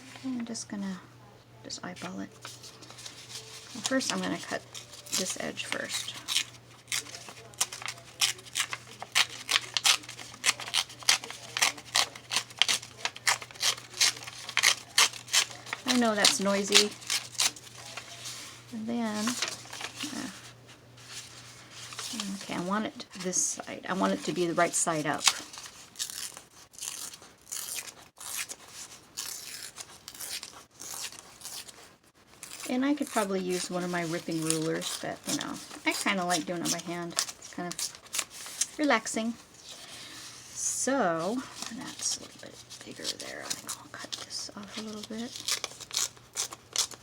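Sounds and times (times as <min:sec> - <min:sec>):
paper tearing: 0:02.4 - 0:22.8, 0:23.9 - 0:38.8, 0:41.2 - 0:47.0.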